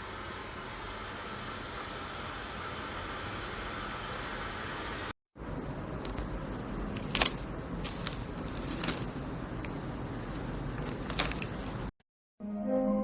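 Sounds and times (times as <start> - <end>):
washing machine rumbling: 5.4 - 11.9.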